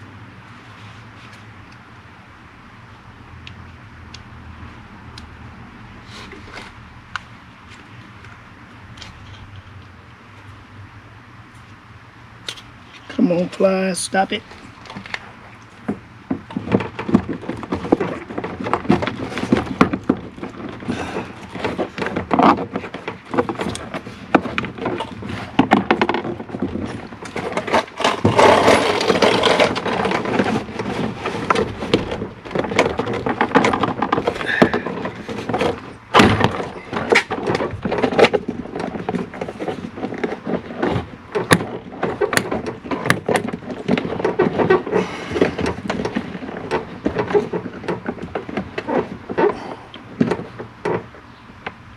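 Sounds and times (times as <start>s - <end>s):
parts clicking and knocking: 12.4s - 51.9s.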